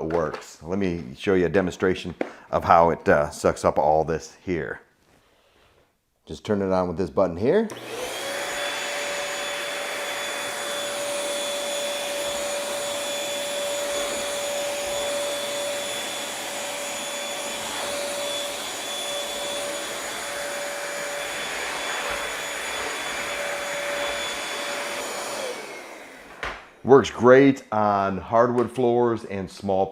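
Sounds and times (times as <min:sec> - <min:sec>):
stick vacuum running: 0:07.7 - 0:26.7.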